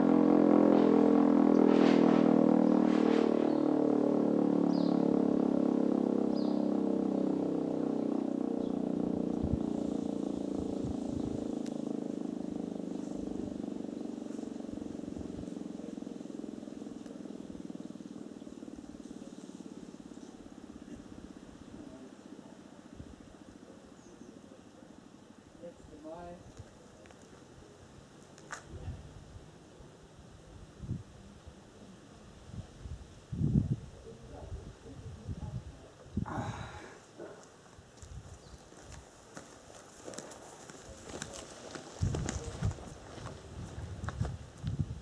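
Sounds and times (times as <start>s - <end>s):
fire alarm siren winding down: 0.0s - 13.2s.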